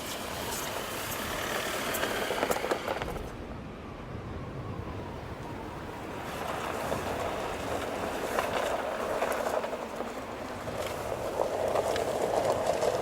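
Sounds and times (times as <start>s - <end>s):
tyres rushing over loose ground: 0.0s - 3.3s, 6.1s - 13.0s
crackles: 6.2s - 13.0s.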